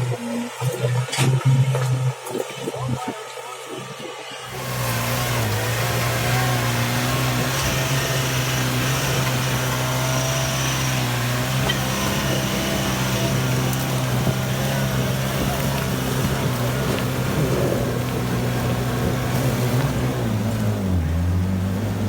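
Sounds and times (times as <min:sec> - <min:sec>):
vehicle engine running: 0:04.5 - 0:22.0.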